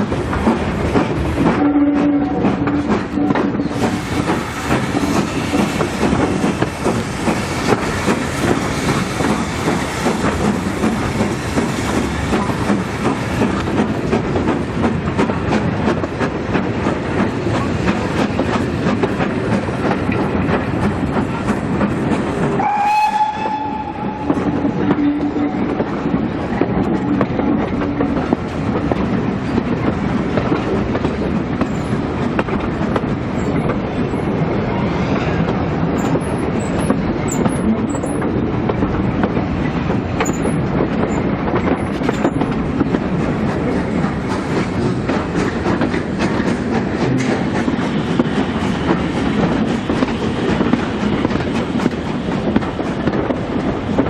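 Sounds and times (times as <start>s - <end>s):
train wheels clattering on rails: 0.0s - 54.0s
steam train whistle: 1.6s - 3.8s, 22.6s - 25.7s.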